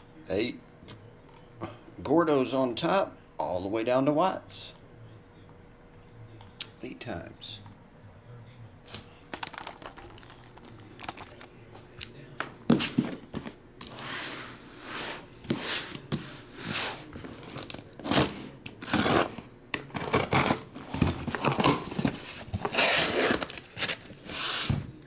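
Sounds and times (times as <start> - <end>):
plastic wrapping tearing and crinkling: 17.0 - 24.4.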